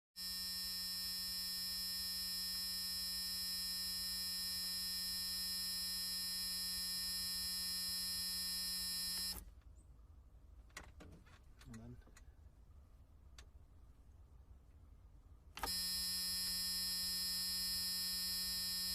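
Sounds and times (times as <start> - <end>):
harsh steady buzz: 0.2 - 9.4, 15.5 - 18.9.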